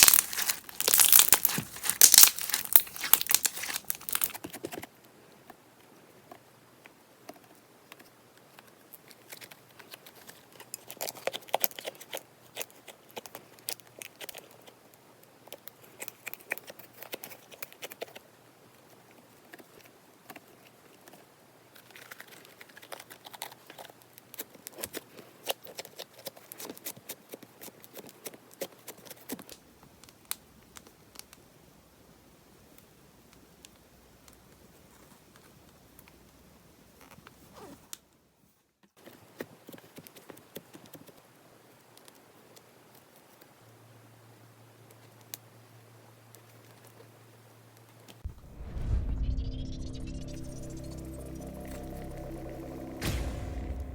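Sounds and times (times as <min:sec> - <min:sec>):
slime crackling and popping: 0:00.0 - 0:04.4.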